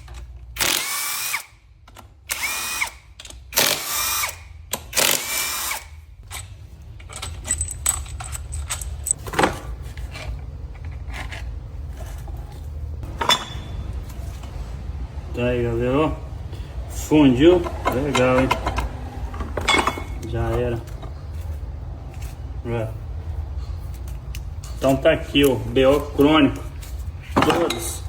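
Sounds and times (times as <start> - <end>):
power drill whining: 2.3 - 3.0
metallic clicks and clinks: 6.3 - 9.2.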